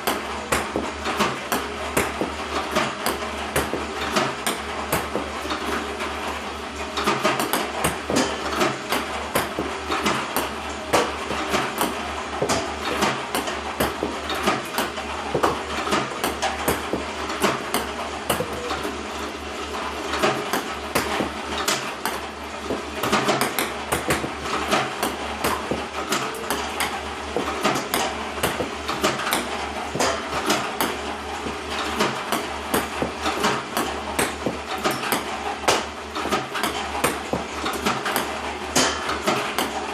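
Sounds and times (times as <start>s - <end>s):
ping-pong balls bouncing: 8.9s - 19.0s, 20.3s - 31.6s, 32.3s - 38.9s.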